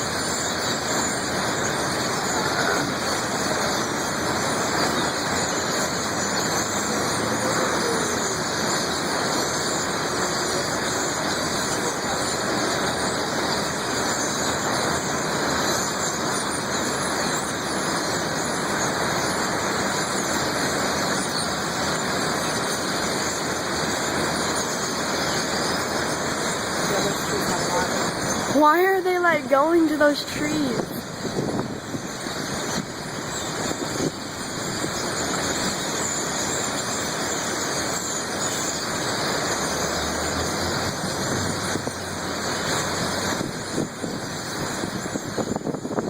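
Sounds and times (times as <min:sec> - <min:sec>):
road traffic: 0:00.0 - 0:17.4, 0:21.6 - 0:36.2, 0:37.4 - 0:45.2
flock of birds squealing: 0:00.2 - 0:28.5.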